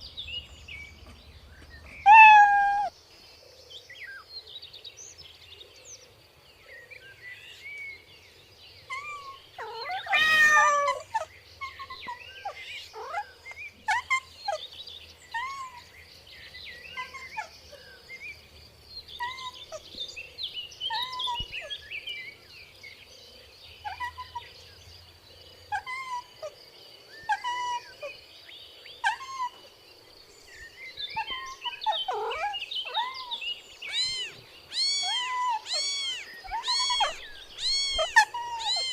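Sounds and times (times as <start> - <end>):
kittens mewing: 2.0 - 2.9, 8.9 - 13.3, 27.3 - 28.1, 29.0 - 29.7, 31.1 - 38.9.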